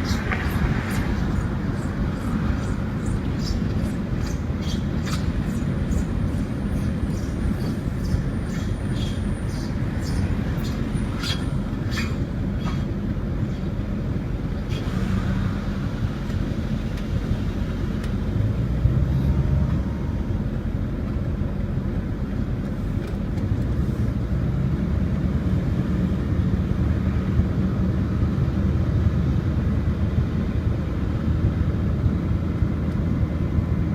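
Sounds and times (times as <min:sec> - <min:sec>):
high-pitched wheel bearing screeches: 0:00.0 - 0:14.0, 0:14.6 - 0:15.8
vehicle rumble: 0:00.0 - 0:33.9.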